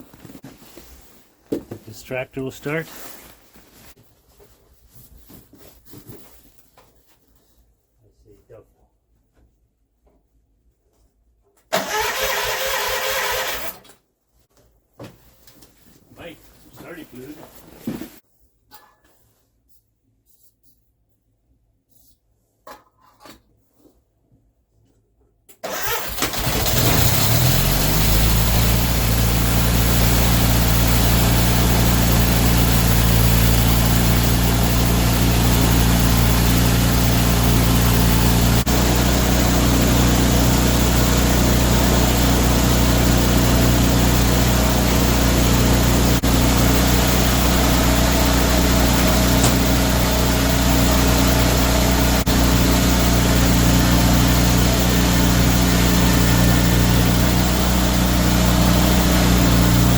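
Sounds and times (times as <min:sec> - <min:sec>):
tractor engine starting and running: 0:11.7 - 0:13.9, 0:25.6 - 0:59.9.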